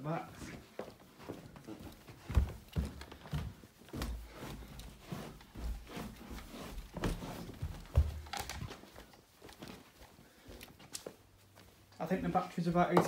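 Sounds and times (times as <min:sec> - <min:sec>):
handling knocks and clicks: 0:06.9 - 0:09.8.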